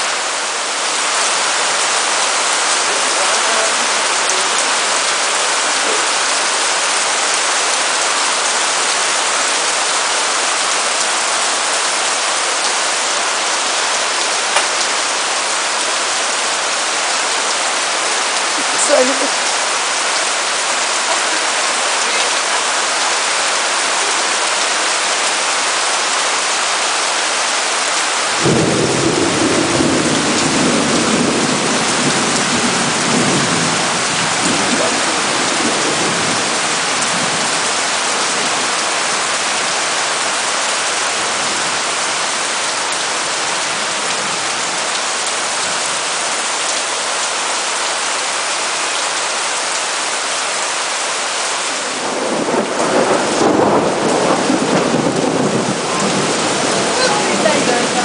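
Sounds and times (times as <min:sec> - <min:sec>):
heavy rain hissing: 0:00.0 - 0:58.0
thunder rumbling: 0:28.3 - 0:37.6, 0:51.9 - 0:58.0.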